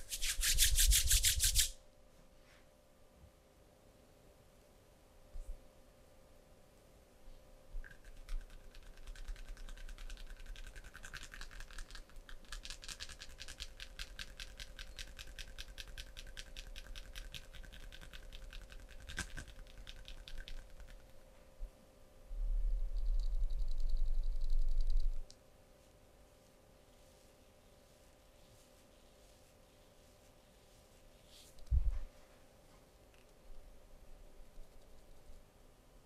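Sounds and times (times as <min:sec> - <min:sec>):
low hum with high tone: 0:13.6 - 0:36.0.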